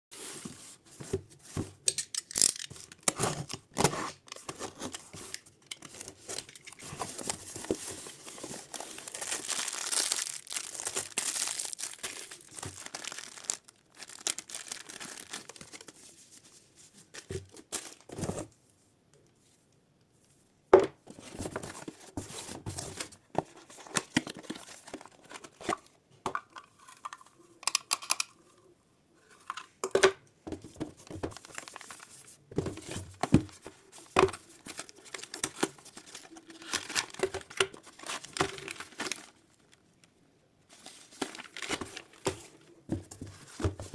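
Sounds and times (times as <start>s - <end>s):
packaging torn and crinkled: 8.7s - 16.0s.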